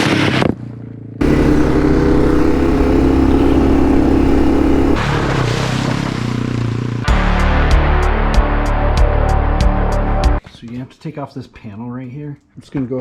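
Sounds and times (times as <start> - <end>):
motorcycle engine running: 1.2 - 5.3.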